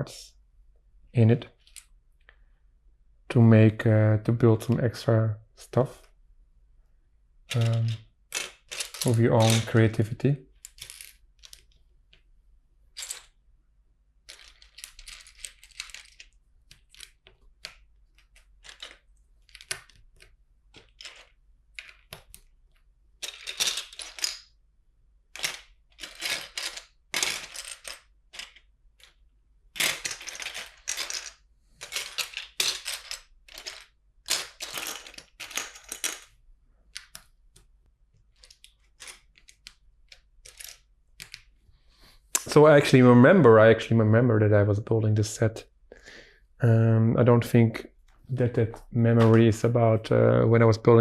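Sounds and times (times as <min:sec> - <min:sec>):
plastic bricks clattering and clicking: 0:07.5 - 0:10.0, 0:10.6 - 0:12.2, 0:14.2 - 0:24.6, 0:25.3 - 0:41.5
rustling of loose pieces: 0:07.5 - 0:10.0, 0:14.2 - 0:24.5, 0:25.2 - 0:42.2.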